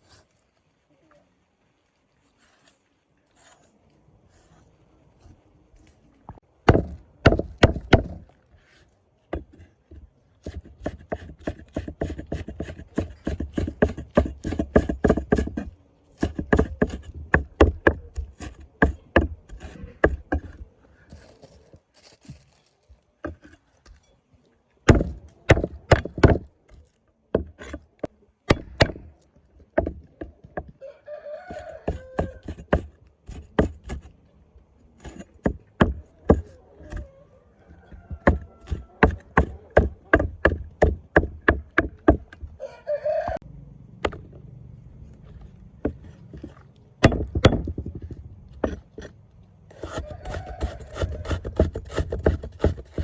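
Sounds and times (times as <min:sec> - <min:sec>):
knife chopping on wooden board: 0:10.4 - 0:20.6, 0:24.9 - 0:26.5, 0:28.5 - 0:29.1, 0:31.5 - 0:34.1, 0:38.0 - 0:42.5, 0:45.8 - 0:49.1, 0:49.8 - 0:53.0.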